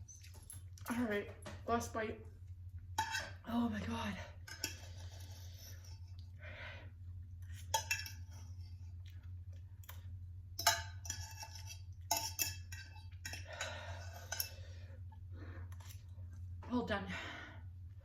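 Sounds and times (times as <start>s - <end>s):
steady low hum: 0.0s - 18.0s
utensil clinking against pot: 7.6s - 8.5s, 10.6s - 14.7s.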